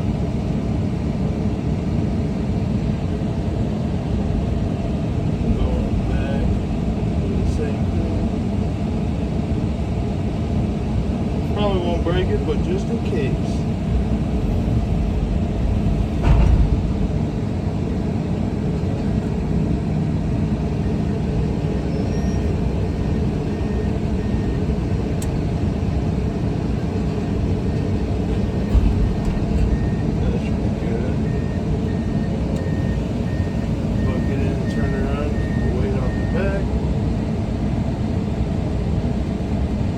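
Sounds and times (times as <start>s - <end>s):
excavator diesel engine running: 0.0s - 39.9s
heavy thump: 15.6s - 17.5s, 28.3s - 30.2s
faint high beeps: 31.2s - 36.6s.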